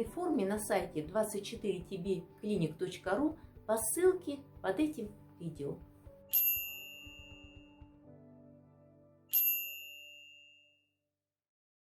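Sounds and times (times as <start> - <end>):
soft background music: 0.0 - 10.2
bell-like chimes: 6.3 - 7.9, 9.3 - 10.8.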